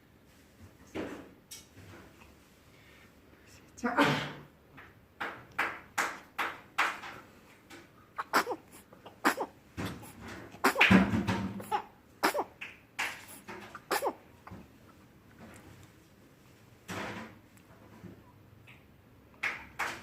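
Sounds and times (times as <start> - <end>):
baby sneezing: 8.2 - 11.0, 11.6 - 14.2.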